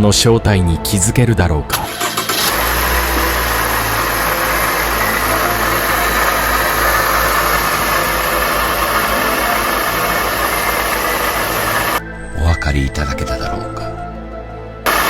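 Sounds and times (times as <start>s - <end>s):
car engine idling: 1.8s - 12.0s
water pump noise: 1.8s - 12.0s.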